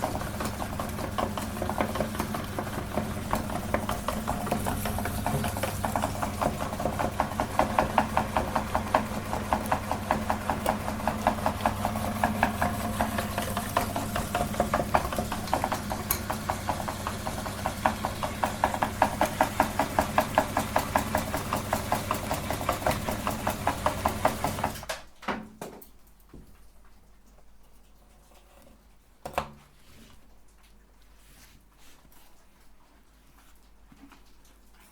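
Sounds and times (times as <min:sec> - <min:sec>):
meat grinder motor humming: 0:00.0 - 0:24.9.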